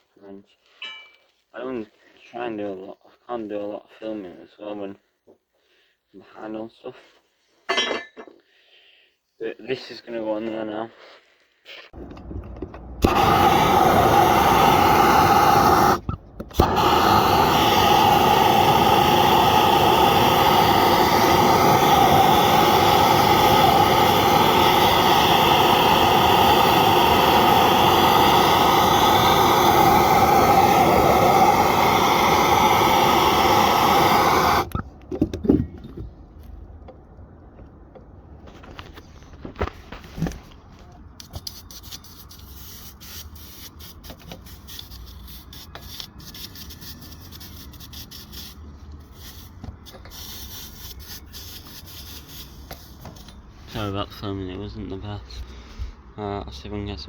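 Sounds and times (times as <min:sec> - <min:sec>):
gas blowtorch burning: 0:12.1 - 0:34.8, 0:42.9 - 0:53.2.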